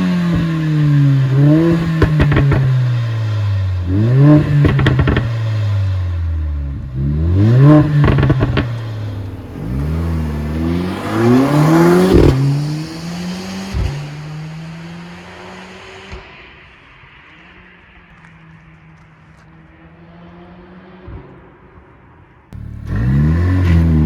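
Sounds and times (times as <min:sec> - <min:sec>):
car engine revving: 0:00.0 - 0:15.7, 0:22.6 - 0:24.0
exhaust crackles and pops: 0:00.3 - 0:03.2, 0:03.8 - 0:05.4, 0:07.4 - 0:12.6, 0:22.6 - 0:24.0.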